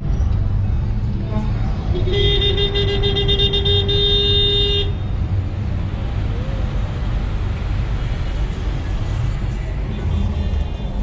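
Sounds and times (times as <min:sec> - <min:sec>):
road traffic rumble: 0:00.0 - 0:11.0
vehicle horn: 0:02.0 - 0:05.0.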